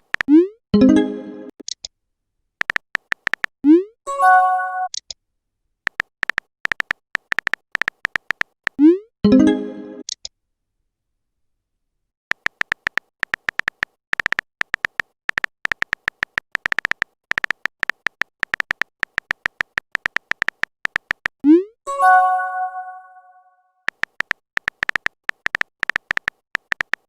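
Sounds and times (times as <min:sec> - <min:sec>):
phone keyboard tap clicks: 0:02.6 - 0:03.5, 0:05.9 - 0:08.8, 0:12.3 - 0:21.3, 0:23.9 - 0:27.0
electronic message chime: 0:21.9 - 0:23.4.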